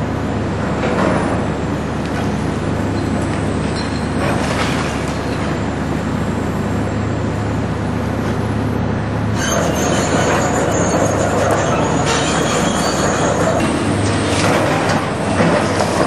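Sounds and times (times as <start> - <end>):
diesel machinery engine hum: 0.0 - 16.0.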